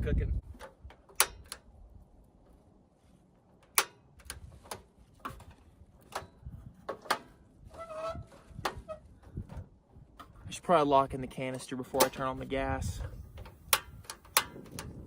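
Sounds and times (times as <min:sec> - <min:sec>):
camp stove gear clicks and knocks: 0:00.4 - 0:01.7, 0:03.5 - 0:07.4, 0:11.3 - 0:12.4, 0:13.0 - 0:15.0
short squeaky scrape: 0:07.6 - 0:09.2.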